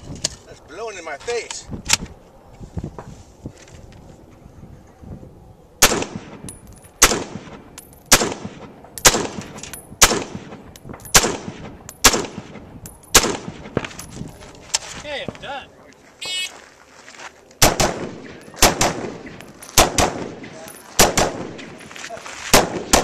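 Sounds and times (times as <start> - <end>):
rifle shots: 5.8 - 13.8, 17.6 - 21.9, 22.5 - 23.0.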